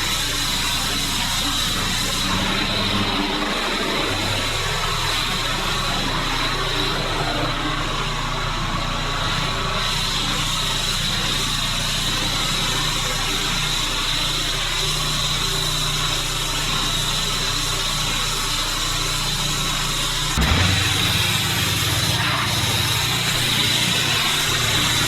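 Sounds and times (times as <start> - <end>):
pressure washer engine drone: 0.0 - 25.0
water spray hissing: 20.4 - 25.0.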